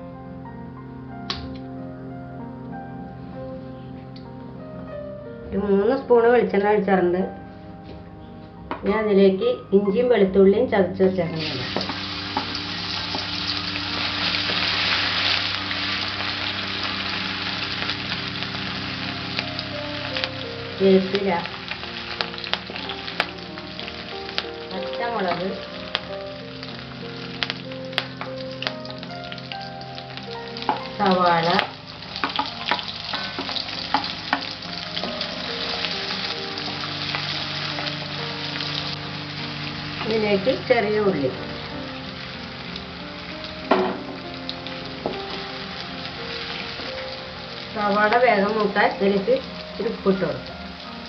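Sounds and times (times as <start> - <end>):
garlic and ginger sizzling in oil: 11.3 - 51.0.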